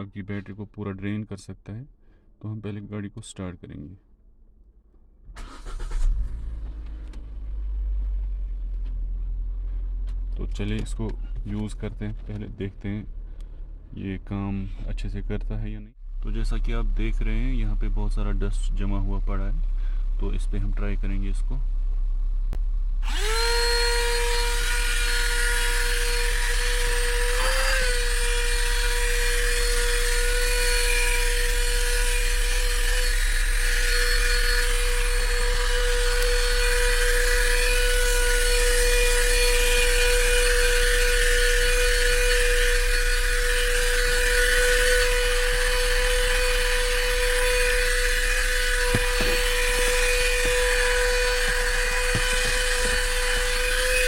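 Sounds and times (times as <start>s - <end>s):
vacuum cleaner motor whine: 23.0s - 54.0s.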